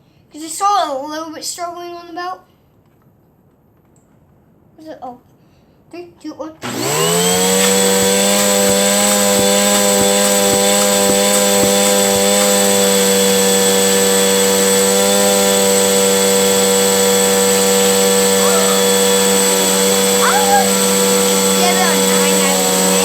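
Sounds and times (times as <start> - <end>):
vacuum cleaner running: 6.6 - 23.0.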